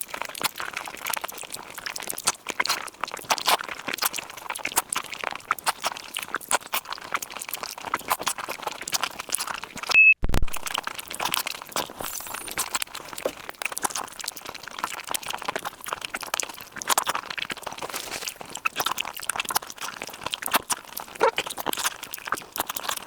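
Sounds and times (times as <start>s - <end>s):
crunchy chewing: 0.0s - 9.9s, 10.5s - 23.0s
mouth clicks: 21.2s - 21.5s.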